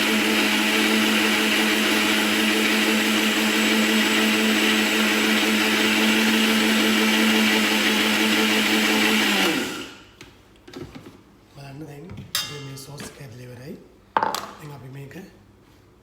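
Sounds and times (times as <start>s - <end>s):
electric blender running: 0.0s - 10.0s.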